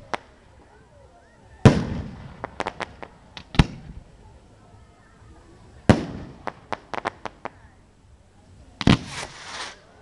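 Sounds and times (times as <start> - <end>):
sharp firework cracks: 0.0 - 0.4, 1.6 - 4.0, 5.9 - 7.6, 8.8 - 9.9.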